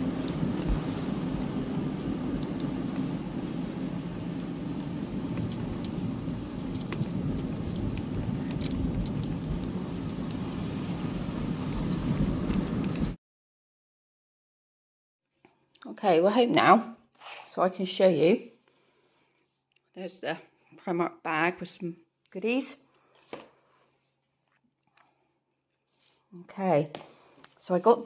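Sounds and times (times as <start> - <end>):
engine and road rumble: 0.0 - 13.2.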